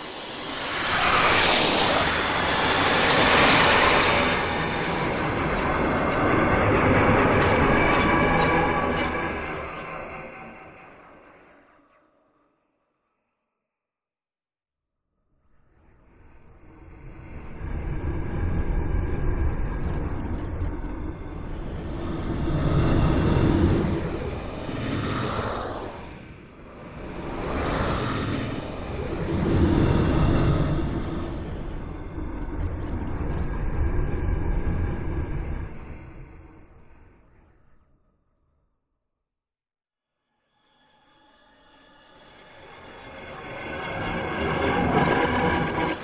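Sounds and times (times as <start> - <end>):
glitchy sci-fi fly-by whoosh: 0.0 - 10.1.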